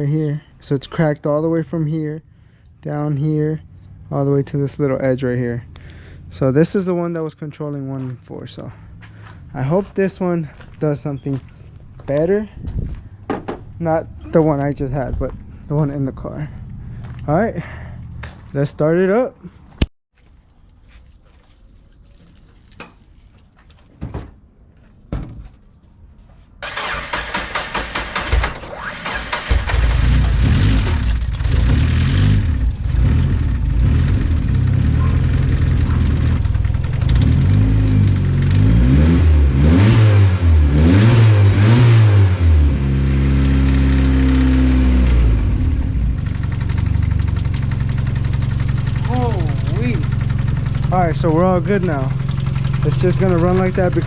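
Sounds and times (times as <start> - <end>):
starter cranking: 26.6 - 32.4, 34.1 - 38.7, 46.2 - 54.0
car engine revving and idling: 29.0 - 54.0.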